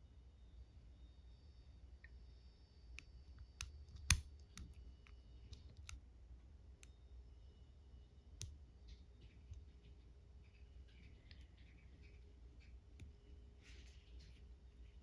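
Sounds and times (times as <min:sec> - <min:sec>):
lock pick clicking in lock: 0:04.0 - 0:04.3.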